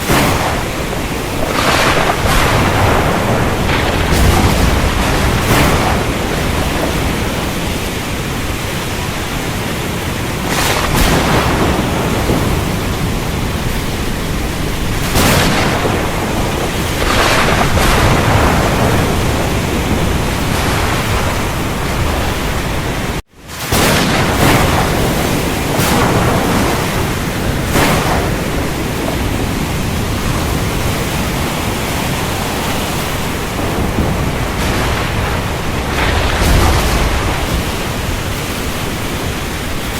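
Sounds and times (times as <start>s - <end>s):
heavy rain: 0.0s - 39.9s
thunder cracks: 0.0s - 39.9s.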